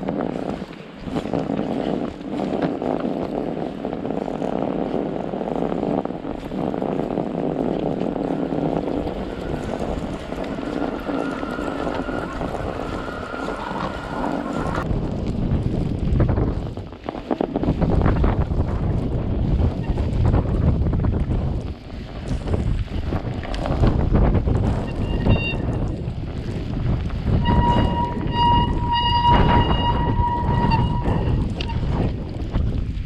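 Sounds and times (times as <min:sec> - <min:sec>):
wind buffeting microphone: 0:00.0 - 0:33.0.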